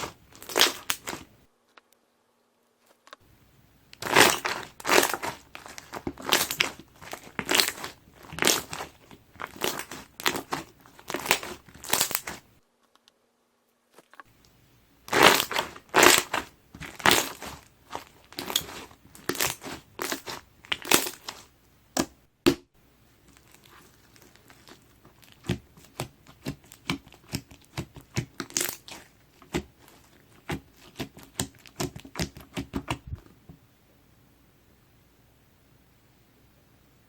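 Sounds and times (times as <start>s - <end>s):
slime squishing: 0.0s - 1.4s, 4.0s - 12.5s, 14.4s - 22.2s, 23.1s - 33.2s.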